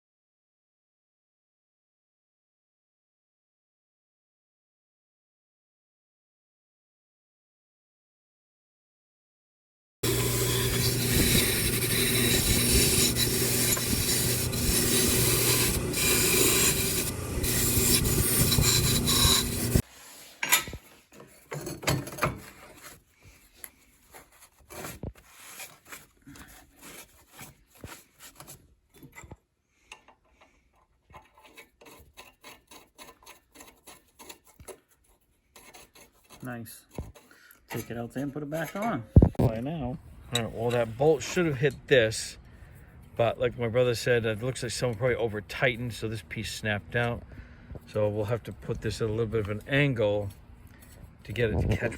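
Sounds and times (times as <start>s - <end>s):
metal scrapes and clicks: 10.0s - 19.8s, 31.1s - 38.9s
rusted metal rasping scrape: 10.0s - 20.4s, 24.0s - 28.6s, 31.2s - 39.0s.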